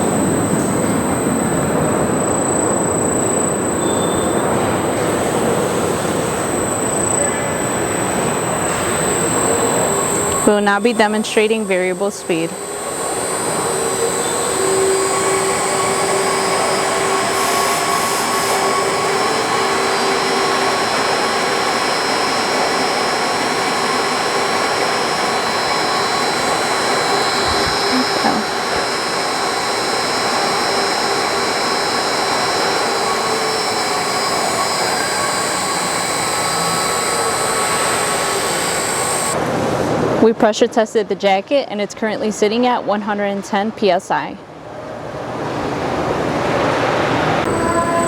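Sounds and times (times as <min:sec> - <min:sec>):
industrial mixer motor whining: 0:00.0 - 0:39.9, 0:45.8 - 0:48.0.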